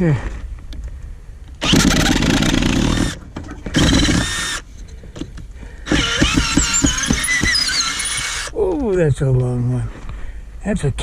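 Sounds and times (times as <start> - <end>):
power drill backing out screw: 1.6 - 4.6, 5.8 - 8.5.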